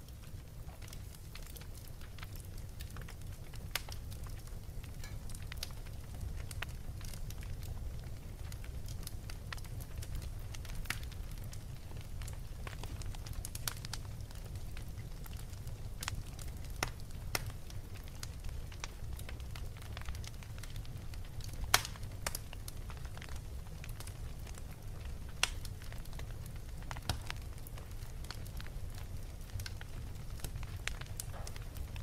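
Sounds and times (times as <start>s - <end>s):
wood fire crackling: 0.0s - 32.0s.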